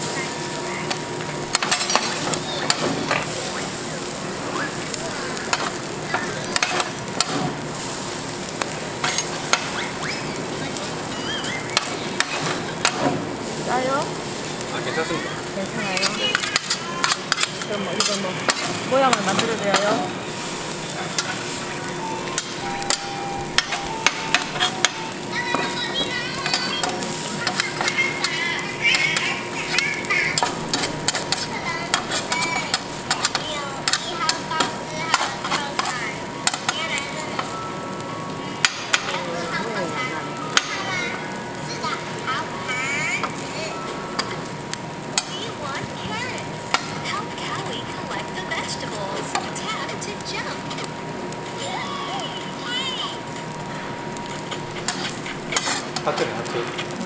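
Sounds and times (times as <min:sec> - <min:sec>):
food sizzling on a griddle: 0:00.0 - 0:57.0
metal utensil scraping a plate: 0:26.5 - 0:33.4, 0:54.5 - 0:56.2.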